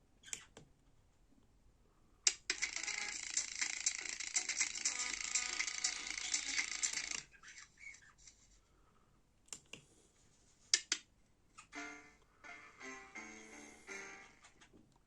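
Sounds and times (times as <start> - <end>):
dense crackling and clicking: 2.3 - 7.3
pitched music notes: 11.7 - 14.6.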